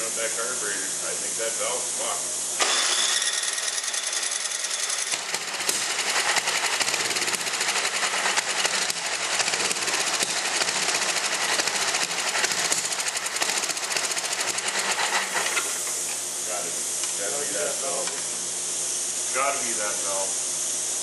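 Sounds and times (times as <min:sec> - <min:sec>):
small engine running roughly: 0:02.6 - 0:15.8.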